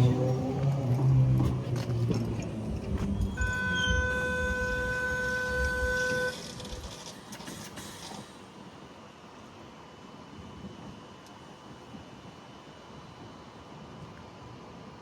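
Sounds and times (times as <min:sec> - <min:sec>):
train rumble: 0:00.0 - 0:08.7
steady single-pitched tone: 0:03.2 - 0:06.4.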